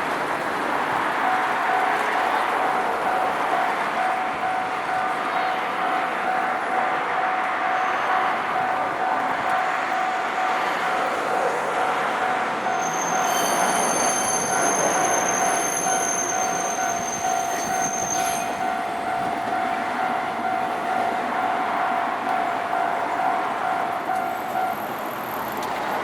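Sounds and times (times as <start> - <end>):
tram passing: 0.0 - 26.0
level crossing warning signal: 1.2 - 26.0
high-pitched wheel squeal: 12.7 - 19.2.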